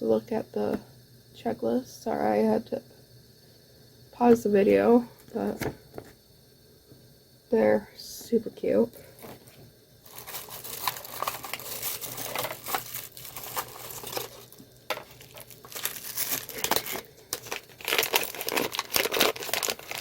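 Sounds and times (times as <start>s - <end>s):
packaging crinkling: 9.2s - 20.0s
packaging tearing: 10.1s - 20.0s.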